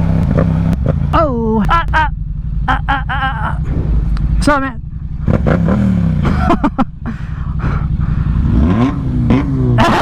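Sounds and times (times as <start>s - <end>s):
motorcycle engine revving: 0.0s - 1.3s, 1.9s - 10.0s
wind rush: 3.6s - 5.9s.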